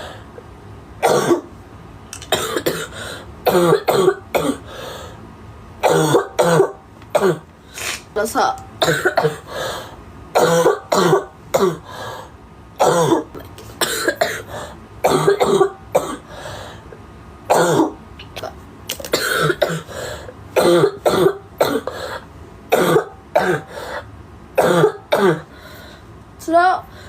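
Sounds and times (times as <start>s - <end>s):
girl coughing: 1.0s - 1.5s, 2.2s - 4.7s, 5.8s - 7.5s, 8.8s - 9.5s, 10.4s - 11.9s, 12.8s - 16.3s, 17.5s - 19.9s, 20.6s - 23.8s, 24.6s - 25.5s.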